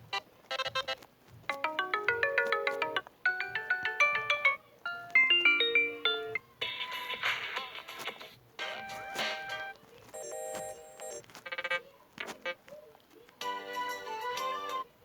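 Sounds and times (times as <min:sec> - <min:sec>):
electronic phone ringtone: 0:00.6 - 0:07.3, 0:08.6 - 0:11.8.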